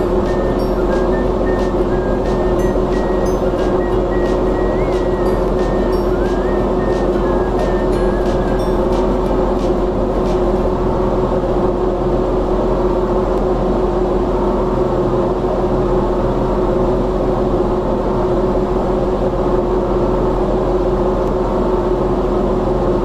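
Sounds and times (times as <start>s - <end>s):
ceiling fan motor humming: 0.0s - 14.7s.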